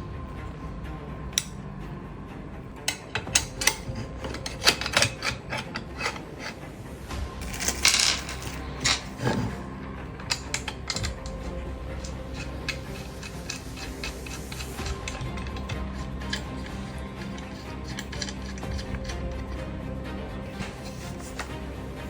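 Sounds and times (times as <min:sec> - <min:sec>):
mechanical clicks and knocks: 0:02.9 - 0:06.6, 0:10.2 - 0:19.6.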